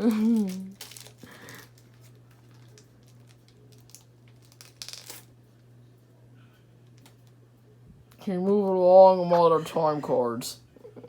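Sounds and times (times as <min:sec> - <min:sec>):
card pack wrapper crinkling: 0:00.0 - 0:05.3.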